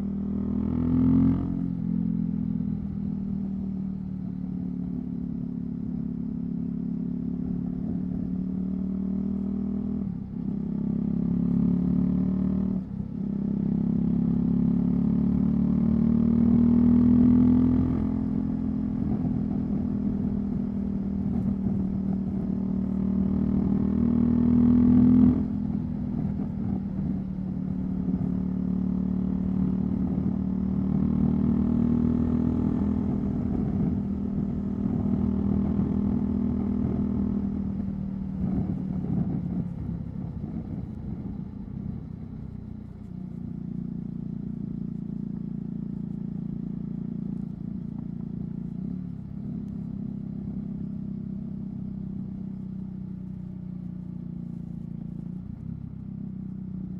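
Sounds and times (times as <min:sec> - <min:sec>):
motorcycle engine riding: 0:00.0 - 0:56.9.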